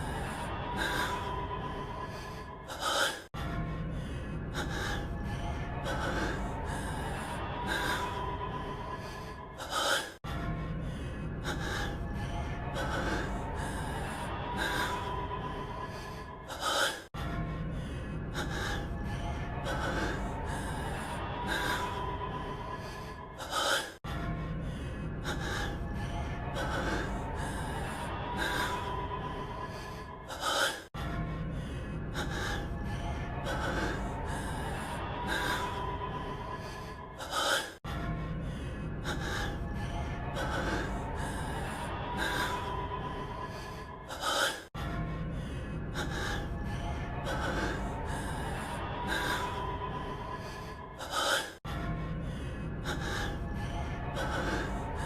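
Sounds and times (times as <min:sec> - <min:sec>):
faint background music: 0:00.0 - 0:55.0
man gasping heavily: 0:40.2 - 0:55.0.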